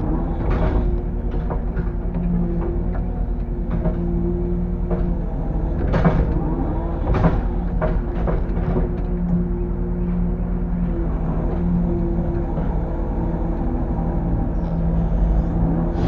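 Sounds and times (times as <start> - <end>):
excavator diesel engine running: 0.0 - 16.0
excavator bucket scraping debris: 14.6 - 16.0.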